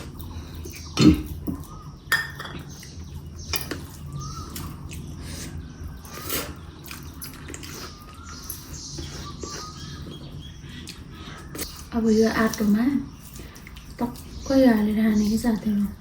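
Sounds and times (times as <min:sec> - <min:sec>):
faint bird chirps: 0:00.2 - 0:16.0
cutlery clinking on plate: 0:02.1 - 0:02.7.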